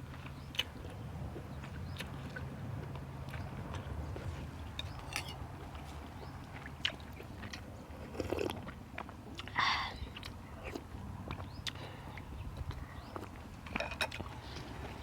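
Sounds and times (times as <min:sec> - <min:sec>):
person chewing noodle soup: 0:00.1 - 0:15.0.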